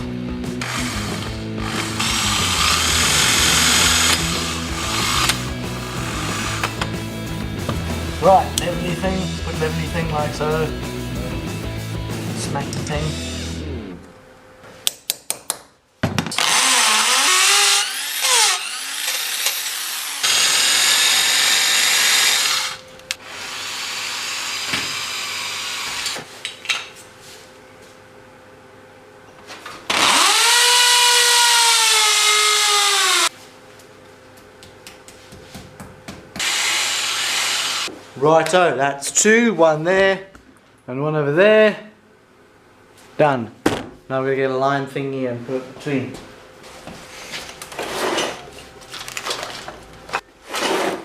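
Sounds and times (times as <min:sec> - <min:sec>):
power drill running: 0:00.6 - 0:07.0, 0:16.4 - 0:26.2, 0:29.9 - 0:33.3, 0:36.4 - 0:37.9.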